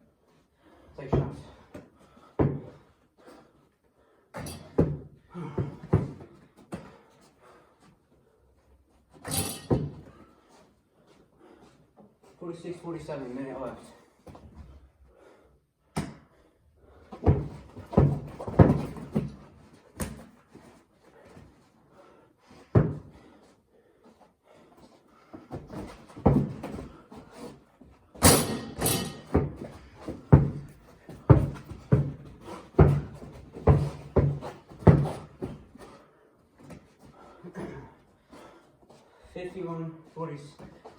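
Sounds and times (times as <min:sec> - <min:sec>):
basketball bouncing on floor: 0:01.1 - 0:01.8, 0:02.4 - 0:02.8, 0:04.4 - 0:06.9, 0:17.1 - 0:19.4, 0:22.8 - 0:23.2, 0:25.5 - 0:27.0, 0:28.2 - 0:35.7.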